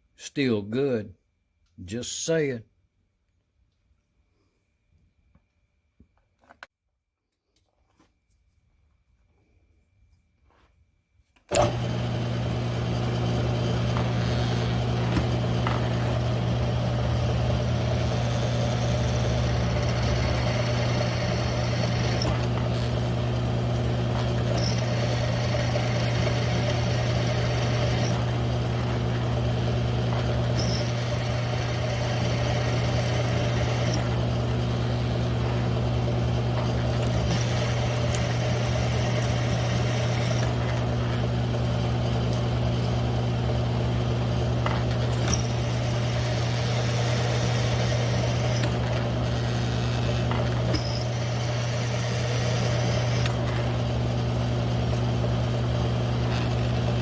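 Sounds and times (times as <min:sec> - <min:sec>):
hole saw cutting steel: 0:11.5 - 0:41.0, 0:44.8 - 0:53.7
drill motor humming: 0:11.5 - 0:57.0.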